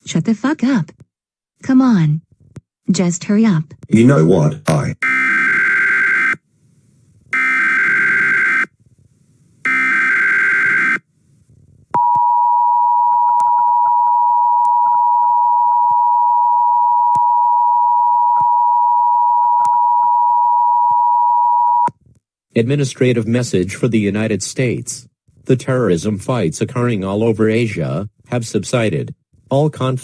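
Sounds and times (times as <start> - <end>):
buzzing digital header bursts: 9.6 - 11.0.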